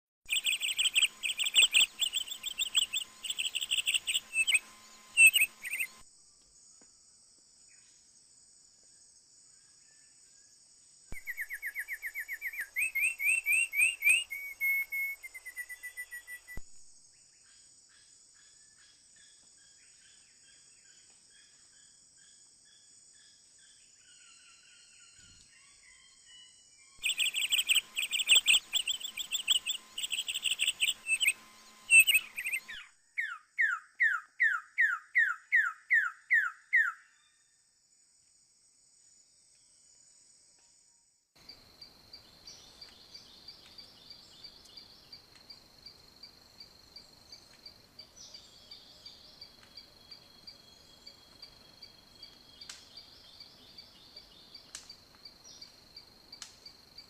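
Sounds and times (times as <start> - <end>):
small bird chirping: 0.3 - 6.0, 11.1 - 37.4.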